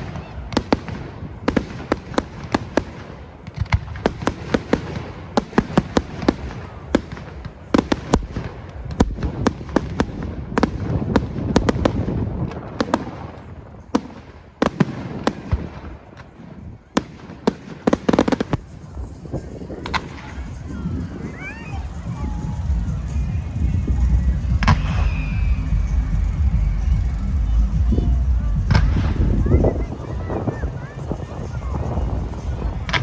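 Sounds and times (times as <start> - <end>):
fireworks bangs and crackles: 0.0 - 33.0
low rumble: 18.4 - 33.0.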